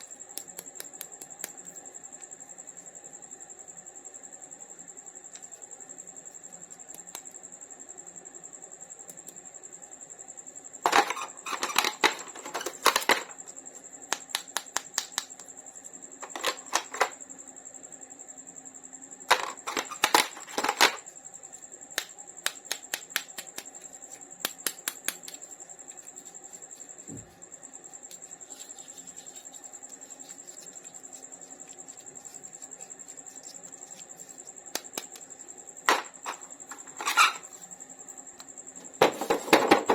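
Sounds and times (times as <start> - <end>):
plastic toys clicking and rattling: 10.9 - 13.4, 16.2 - 17.1, 19.3 - 21.0.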